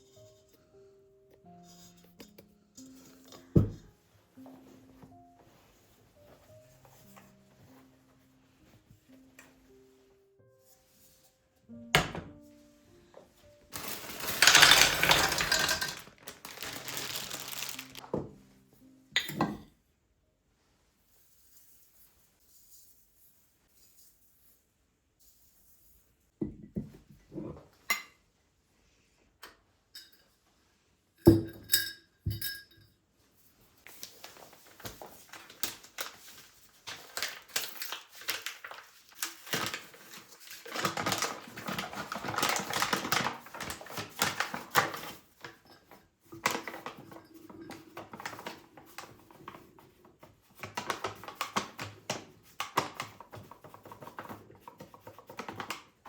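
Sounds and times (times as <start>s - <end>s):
dishes scraping and rustling: 13.7s - 18.0s, 33.8s - 56.0s.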